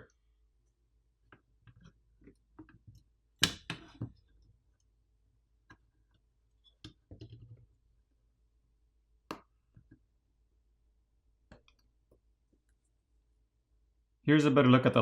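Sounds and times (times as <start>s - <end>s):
small clicks and knocks of handling: 1.2s - 4.9s, 5.6s - 7.8s, 11.5s - 13.0s.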